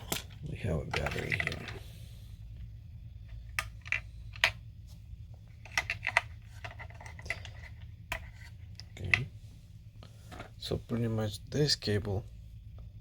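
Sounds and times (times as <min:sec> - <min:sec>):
plastic parts clicking: 0:00.0 - 0:01.8, 0:05.6 - 0:09.3
low steady hum: 0:00.0 - 0:13.0.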